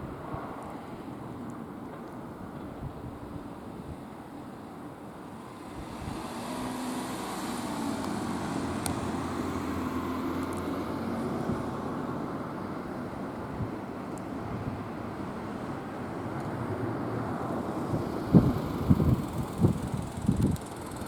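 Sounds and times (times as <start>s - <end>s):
motor vehicle rumble: 5.1s - 21.0s
sharp tick: 20.0s - 21.0s.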